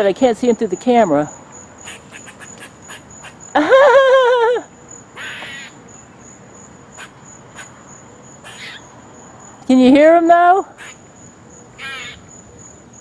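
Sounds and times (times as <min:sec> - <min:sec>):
animal calling: 0:01.8 - 0:03.6, 0:05.2 - 0:05.8, 0:07.0 - 0:07.8, 0:08.4 - 0:09.0, 0:10.7 - 0:11.1, 0:11.7 - 0:12.3.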